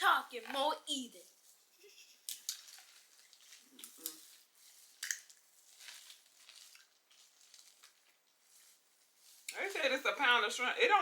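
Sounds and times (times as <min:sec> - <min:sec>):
wet eating sounds: 0:02.2 - 0:09.6
shells peeled and meat chewed: 0:02.3 - 0:08.4.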